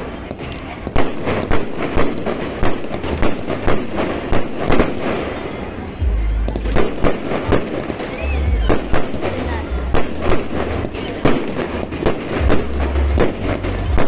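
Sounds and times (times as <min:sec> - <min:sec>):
fireworks bangs and crackles: 0:00.0 - 0:14.0
low rumble: 0:06.0 - 0:06.8, 0:11.6 - 0:14.0.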